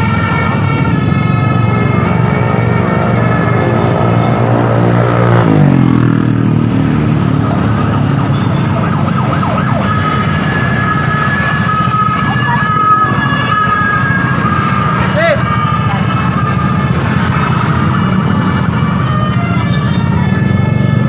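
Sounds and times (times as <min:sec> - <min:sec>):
bus melody horn: 0:00.0 - 0:05.5, 0:10.0 - 0:21.0
traffic noise: 0:00.0 - 0:21.0
vehicle engine slowing: 0:00.0 - 0:21.0.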